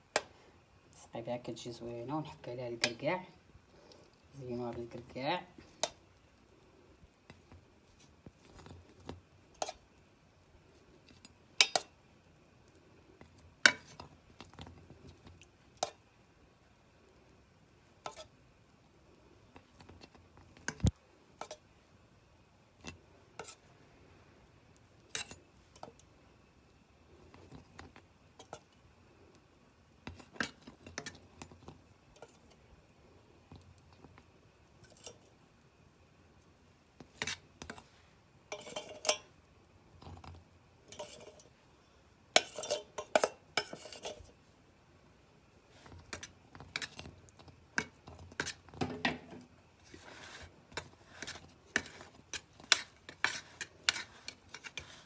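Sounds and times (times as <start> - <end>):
utensils clinking against dishes: 38.5 - 39.2, 42.4 - 44.2.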